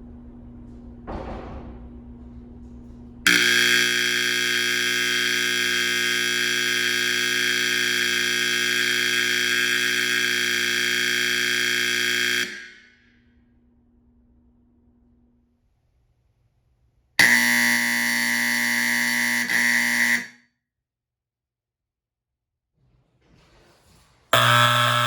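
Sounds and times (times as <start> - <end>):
fire alarm horn steady tone: 3.3 - 13.4, 17.2 - 20.5, 24.4 - 25.0.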